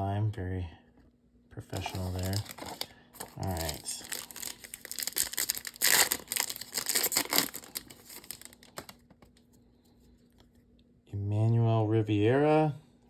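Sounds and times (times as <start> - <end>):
wrapper tearing and crinkling: 1.8 - 9.0.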